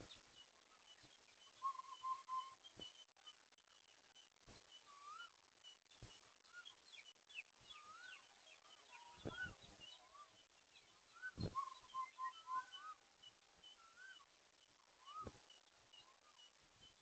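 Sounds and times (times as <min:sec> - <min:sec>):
birds whistling calls: 0:01.4 - 0:03.0, 0:04.8 - 0:05.4, 0:06.5 - 0:13.0, 0:13.6 - 0:14.3, 0:15.0 - 0:16.5
high bird chirps: 0:04.7 - 0:17.0.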